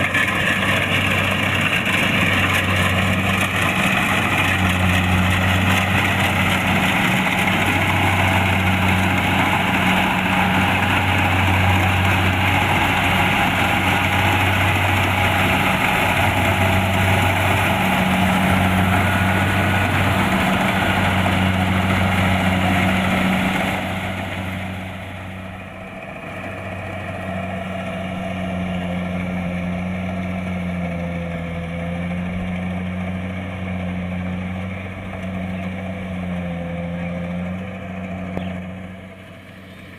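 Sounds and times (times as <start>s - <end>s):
diesel engine running: 0.0s - 39.9s
rushing machinery noise: 0.0s - 39.9s.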